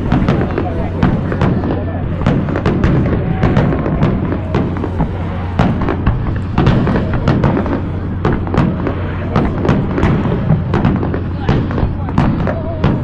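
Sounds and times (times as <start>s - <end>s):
continuous low rumble: 0.0s - 13.0s
fireworks bursting: 0.0s - 13.0s.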